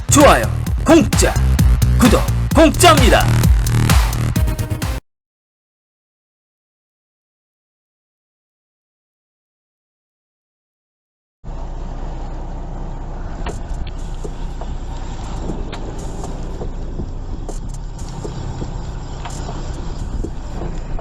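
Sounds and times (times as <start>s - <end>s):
boat engine rumbling: 0.0s - 4.8s.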